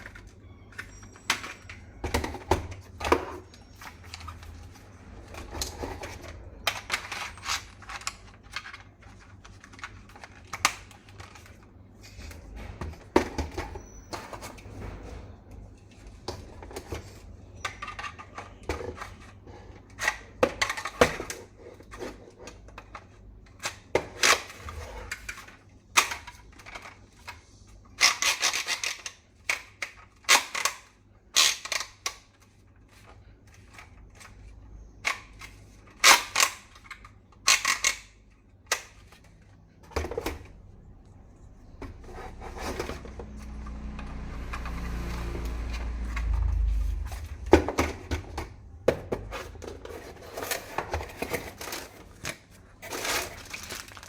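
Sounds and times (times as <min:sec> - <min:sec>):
plastic toy rifle clicks and rattles: 0:28.0 - 0:34.4, 0:35.0 - 0:39.3.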